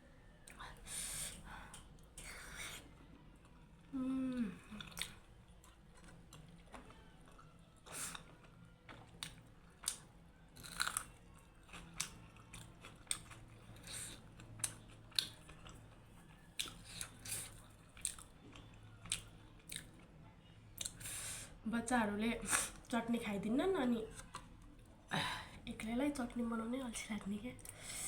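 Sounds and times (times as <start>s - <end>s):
close chewing with wet mouth clicks: 4.8s - 20.1s, 24.2s - 24.5s.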